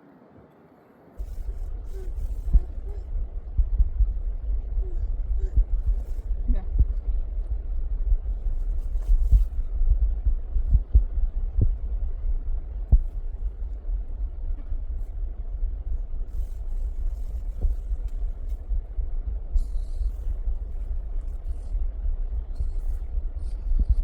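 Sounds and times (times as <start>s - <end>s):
wind buffeting microphone: 1.2s - 24.0s.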